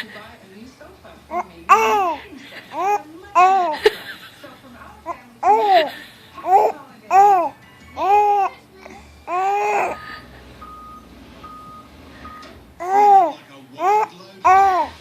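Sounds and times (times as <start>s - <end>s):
baby making high-pitched sounds: 6.5s - 8.5s, 9.3s - 10.0s, 12.8s - 15.0s.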